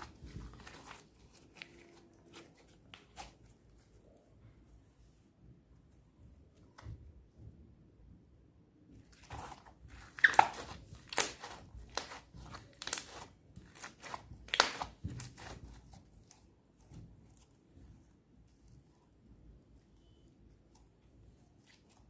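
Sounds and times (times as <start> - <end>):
slime crackling and popping: 9.2 - 15.8.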